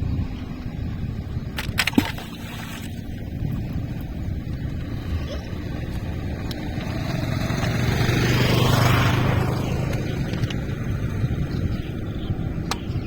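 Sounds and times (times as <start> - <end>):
vehicle driving past: 4.8 - 11.3.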